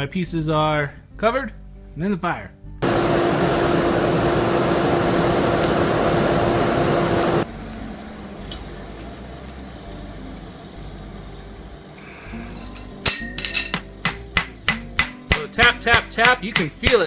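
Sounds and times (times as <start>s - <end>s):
electric air blower rushing: 2.8s - 11.0s.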